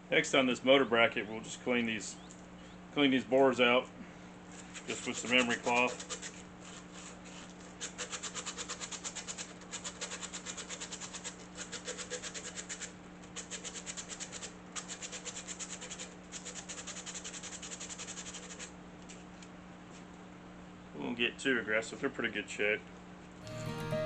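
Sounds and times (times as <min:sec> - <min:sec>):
emery cloth scratching metal: 0:04.6 - 0:18.8.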